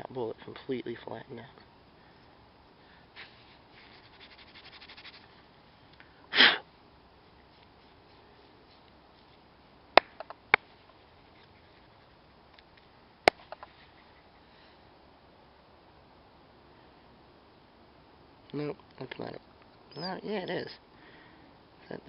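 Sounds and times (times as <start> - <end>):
man sniffing: 6.3 - 6.6.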